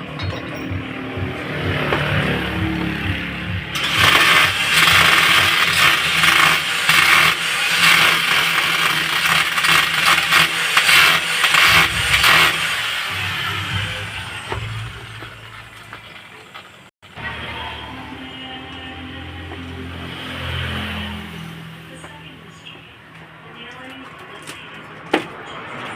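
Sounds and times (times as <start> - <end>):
power drill boring into wall: 3.8 - 16.6.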